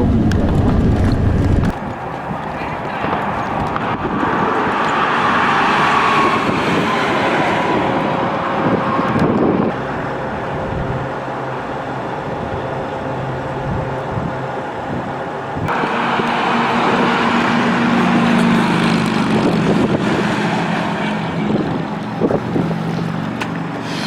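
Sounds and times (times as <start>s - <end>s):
bus road and engine noise: 0.0s - 24.0s.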